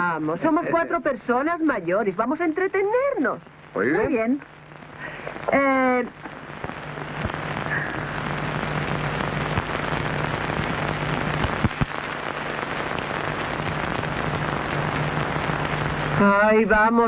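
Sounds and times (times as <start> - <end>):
steady rushing hiss: 0.0 - 17.0
low hum: 6.1 - 16.2.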